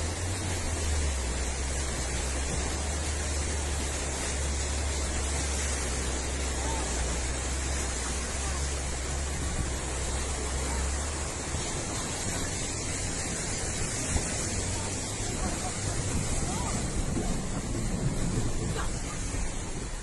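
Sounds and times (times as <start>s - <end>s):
wind buffeting microphone: 0.0s - 20.0s
strong wind rushing: 9.1s - 20.0s.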